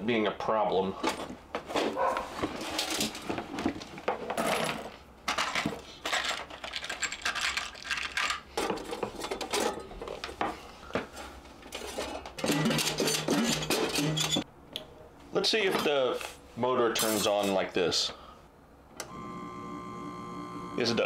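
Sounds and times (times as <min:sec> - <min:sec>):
small metal parts clinking: 0:04.4 - 0:10.0.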